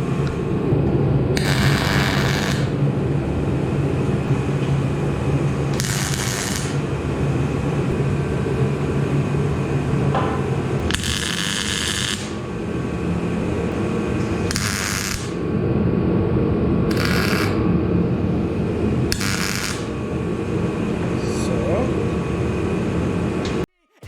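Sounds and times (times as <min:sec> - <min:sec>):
welding crackling: 0:00.0 - 0:10.0, 0:10.7 - 0:15.5, 0:16.9 - 0:17.7, 0:19.0 - 0:20.0
steady low hum: 0:00.0 - 0:24.0.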